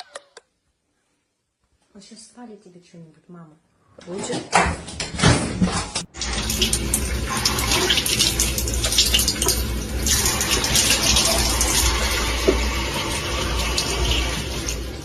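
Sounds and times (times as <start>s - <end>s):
running water splashing: 6.2s - 15.0s.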